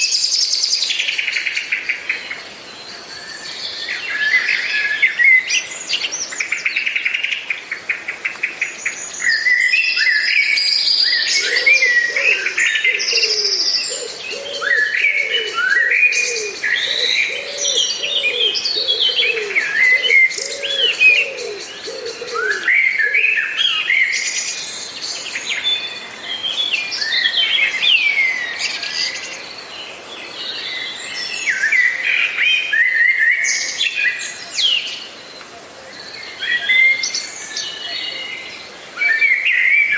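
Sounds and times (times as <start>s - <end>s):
birds singing: 0.0s - 39.9s.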